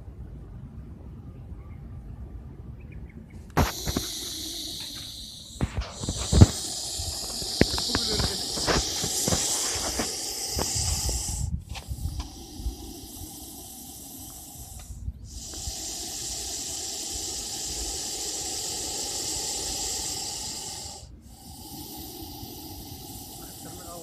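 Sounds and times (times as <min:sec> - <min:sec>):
snake hissing loudly: 0:03.6 - 0:24.0.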